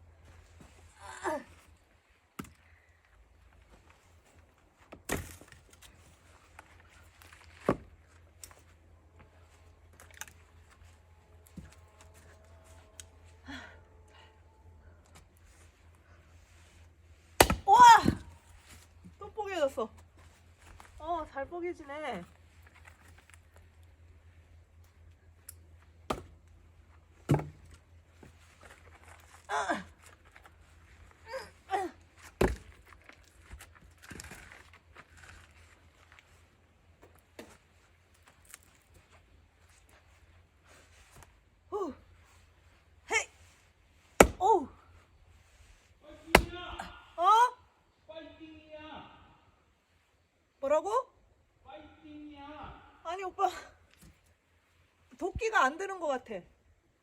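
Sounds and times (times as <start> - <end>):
axe splitting firewood: 4.8 - 8.6, 17.3 - 18.9, 26.0 - 28.3, 32.2 - 35.5, 44.1 - 44.8, 46.2 - 46.9
axe striking firewood: 4.9 - 5.9, 7.6 - 8.0, 17.3 - 18.8, 26.0 - 26.5, 27.2 - 27.8, 32.2 - 32.9, 44.2 - 44.6, 46.3 - 46.9
person exclaiming: 17.6 - 18.3, 41.7 - 42.0, 44.3 - 44.8, 46.1 - 49.2.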